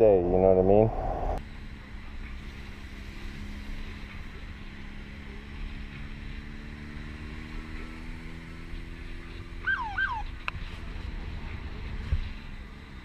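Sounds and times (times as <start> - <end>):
wind rumble on microphone: 0.0 - 1.4
motorcycle engine running: 1.5 - 13.0.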